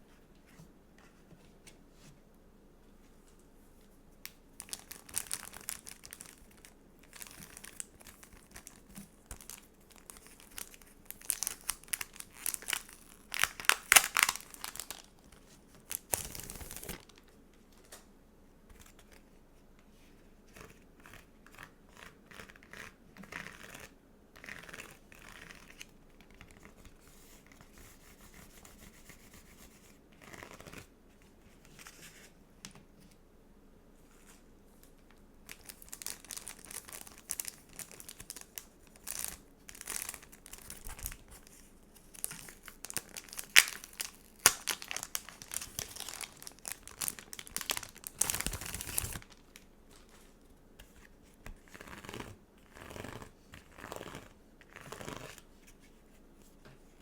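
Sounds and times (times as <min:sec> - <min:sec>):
plastic packaging crinkling: 0:04.6 - 0:17.3, 0:35.5 - 0:50.2.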